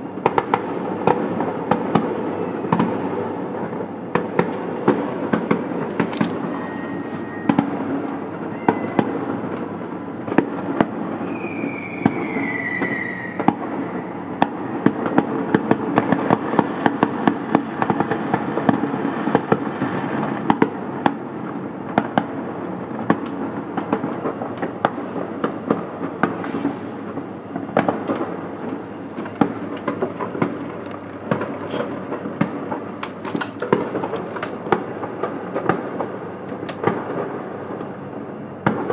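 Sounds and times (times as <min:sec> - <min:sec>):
fireworks and firecrackers banging: 0:00.0 - 0:38.9
falling firework whistle: 0:06.4 - 0:15.3, 0:26.2 - 0:27.0.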